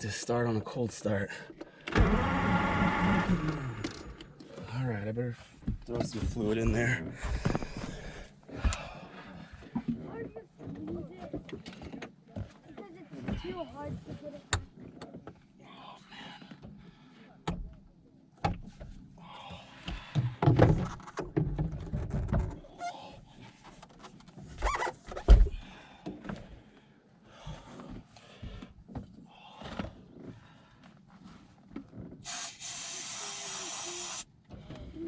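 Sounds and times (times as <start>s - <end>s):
aerosol can spraying hiss: 32.2s - 34.3s.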